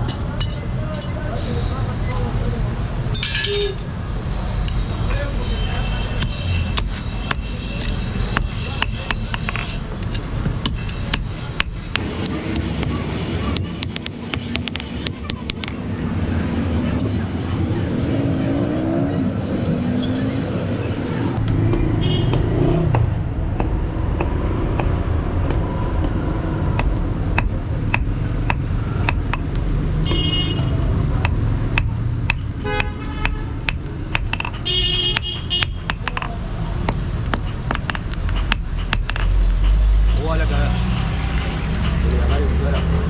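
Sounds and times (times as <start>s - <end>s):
metallic knocks and clinks: 0.0s - 1.2s.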